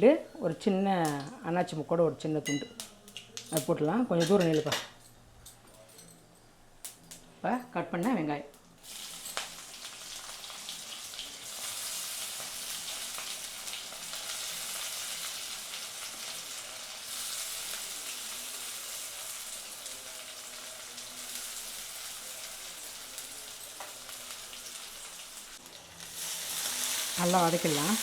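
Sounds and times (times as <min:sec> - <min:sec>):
onions sizzling in hot oil: 0:08.8 - 0:28.0.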